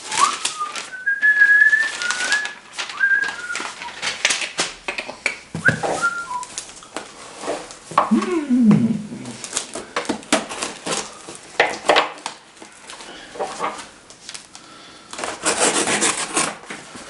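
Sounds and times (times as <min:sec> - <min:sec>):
packaging paper tearing: 0:00.0 - 0:05.0, 0:05.7 - 0:07.9, 0:09.2 - 0:17.0
person humming: 0:08.1 - 0:09.4.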